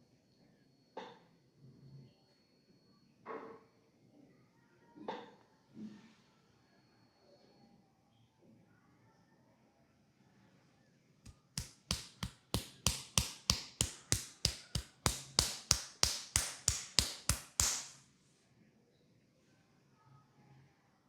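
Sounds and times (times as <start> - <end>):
hands slapping in massage: 11.3 - 18.0.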